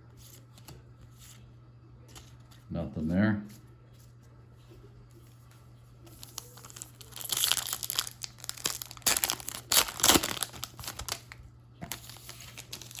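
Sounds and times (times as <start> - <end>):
card pack wrappers crinkling: 6.1 - 13.0.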